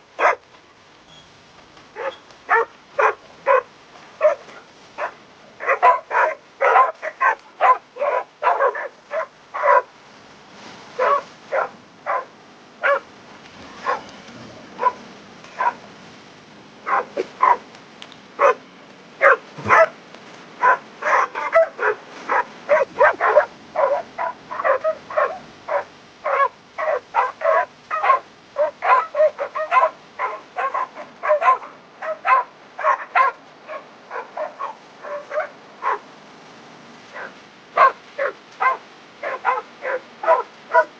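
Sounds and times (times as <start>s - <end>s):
dog barking: 0.2s - 0.4s, 2.0s - 9.9s, 11.0s - 13.1s, 13.8s - 14.1s, 14.8s - 15.8s, 16.8s - 17.6s, 18.4s - 18.6s, 19.2s - 20.0s, 20.6s - 36.1s, 37.1s - 40.9s.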